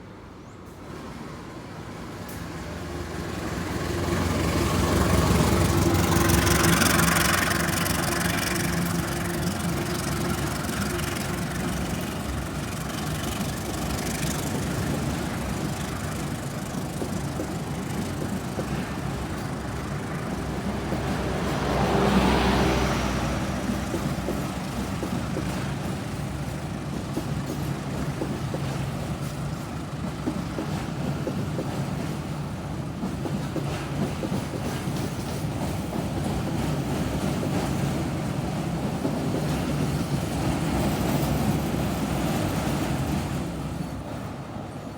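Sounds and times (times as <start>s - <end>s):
train rail noise: 0.0s - 44.9s
diesel engine drone: 2.1s - 27.2s.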